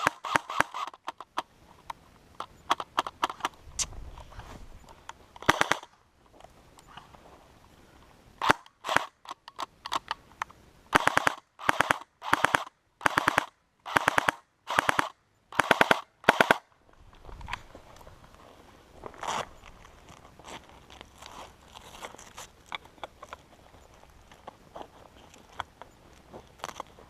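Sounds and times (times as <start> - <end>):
airsoft gun full-auto bursts: 0.0 - 1.0, 5.4 - 5.9, 8.4 - 9.2, 10.9 - 16.7.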